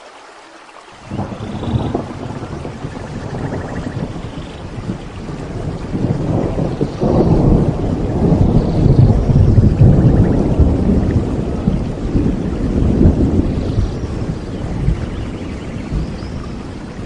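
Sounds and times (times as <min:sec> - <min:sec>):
steady rain: 0:00.0 - 0:17.0
thunder rumbling: 0:01.0 - 0:17.0.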